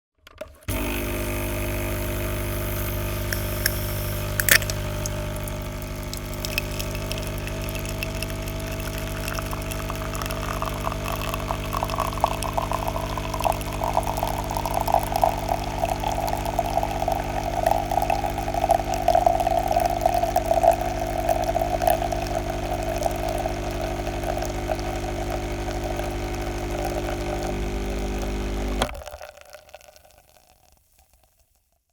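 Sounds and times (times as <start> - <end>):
coffee machine pump humming: 0.6 - 29.8
sharp click: 4.4 - 4.9
gurgling flow of liquid: 4.4 - 27.5.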